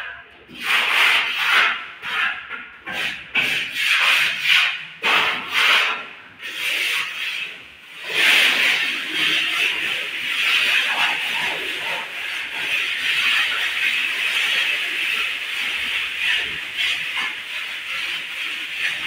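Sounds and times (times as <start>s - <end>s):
trowel scraping plaster on wall: 0.0s - 19.0s.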